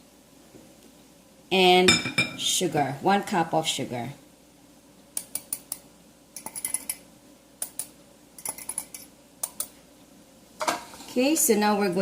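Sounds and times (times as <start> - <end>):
utensils clinking against mixing bowl: 6.4 - 7.0.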